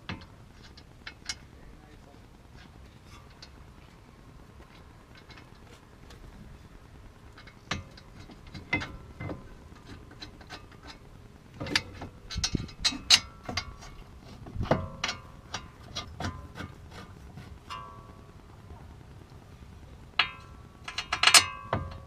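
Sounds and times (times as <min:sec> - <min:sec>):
hand tools clanking against metal: 0:07.3 - 0:11.0, 0:11.6 - 0:18.1, 0:20.2 - 0:22.0.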